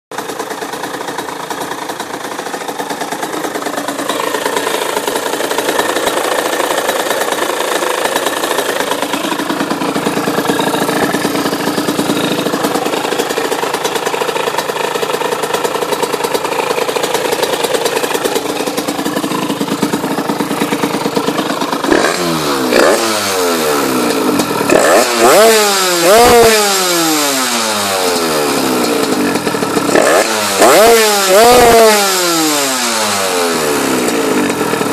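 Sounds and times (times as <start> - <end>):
two-stroke engine idling: 0.1 - 34.9
engine revving in sharp blips: 21.9 - 29.2, 29.8 - 34.5.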